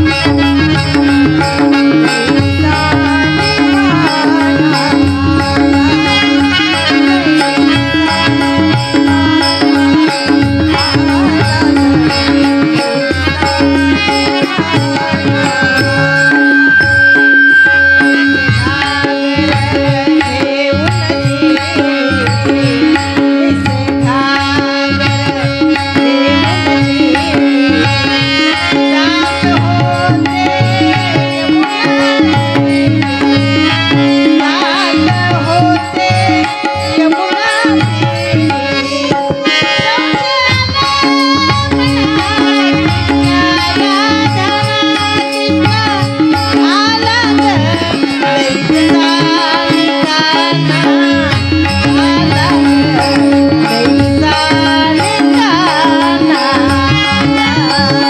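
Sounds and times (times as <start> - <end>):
hand drum rhythm: 0.0 - 58.0
steady drone: 10.1 - 21.0
melody instrument: 13.0 - 20.0.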